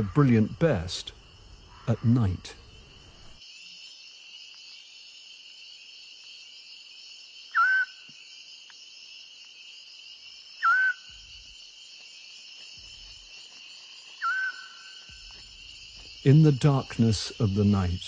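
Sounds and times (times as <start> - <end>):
crickets trilling: 0.0 - 18.0
short whistled call: 7.5 - 8.1, 10.6 - 11.1, 14.2 - 15.0.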